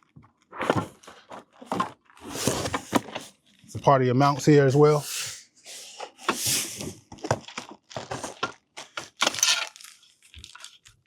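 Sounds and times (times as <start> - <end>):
plastic packaging crinkling: 7.4 - 11.0.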